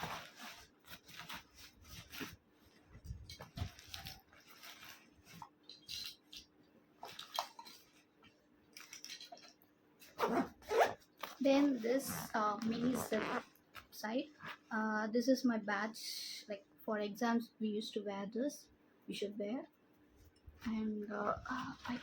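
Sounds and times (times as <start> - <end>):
rustling of bag contents: 0.0 - 6.2, 8.7 - 13.4.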